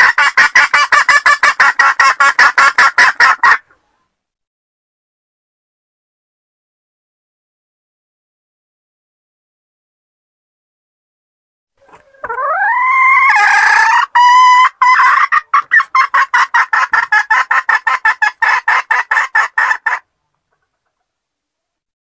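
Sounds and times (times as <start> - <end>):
hen cackling: 0.0 - 3.9, 11.8 - 21.0.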